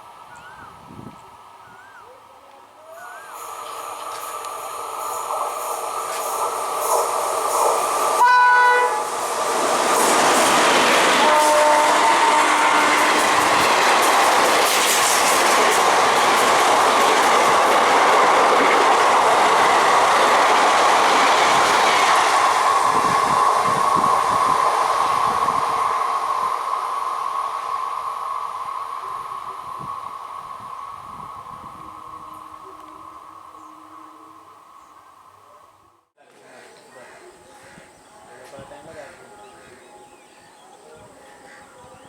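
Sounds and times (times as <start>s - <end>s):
train wheels rumbling on rails: 2.9s - 33.9s.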